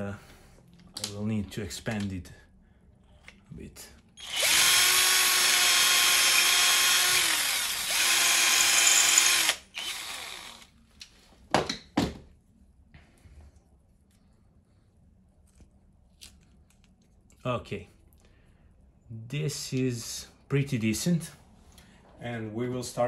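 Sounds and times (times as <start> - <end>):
power drill whining: 4.2 - 10.7.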